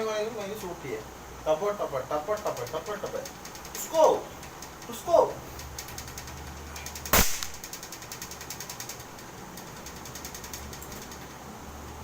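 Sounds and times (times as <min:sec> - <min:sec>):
rapid faint ticking: 0:02.0 - 0:12.0
air gun shot: 0:07.1 - 0:07.7.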